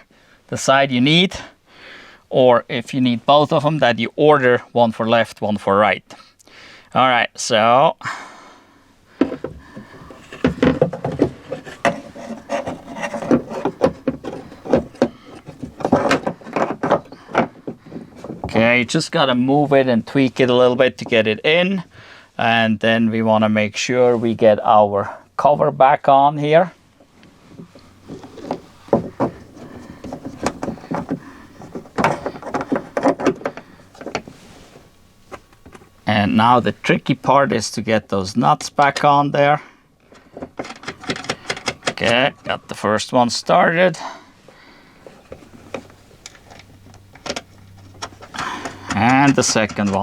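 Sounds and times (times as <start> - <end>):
part scraping against car door: 9.3 - 18.4, 27.6 - 36.0, 45.0 - 50.0.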